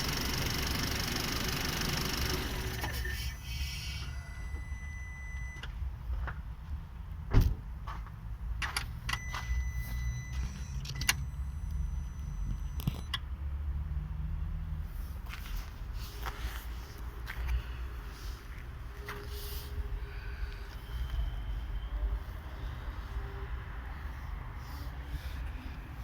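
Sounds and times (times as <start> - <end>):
car engine idling: 0.0 - 4.5.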